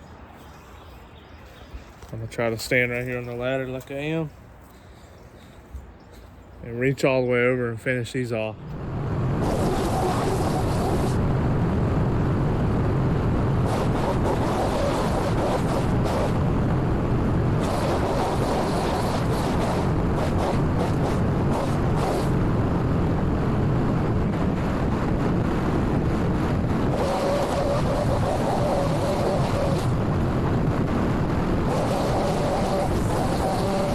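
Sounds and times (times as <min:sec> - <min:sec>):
steady engine whine: 0:00.0 - 0:33.9
pole saw engine running: 0:17.5 - 0:22.4, 0:26.6 - 0:30.6, 0:31.4 - 0:33.9.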